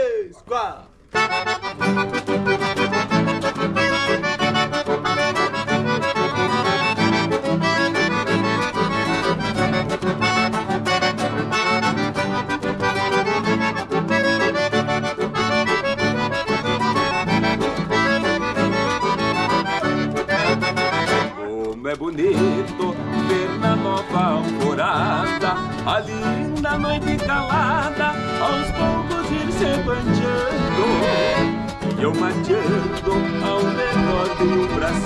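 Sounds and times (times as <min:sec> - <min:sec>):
steady beat: 0:00.0 - 0:21.4
accordion playing: 0:00.0 - 0:35.0.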